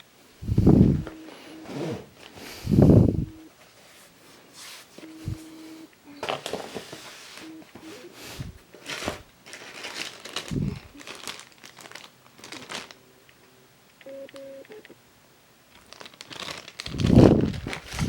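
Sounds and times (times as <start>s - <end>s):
packaging crinkling: 8.8s - 13.0s, 15.7s - 18.0s.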